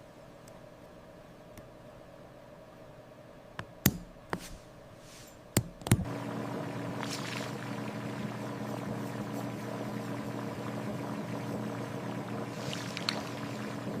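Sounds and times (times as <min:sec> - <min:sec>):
motor humming: 0:06.0 - 0:14.0.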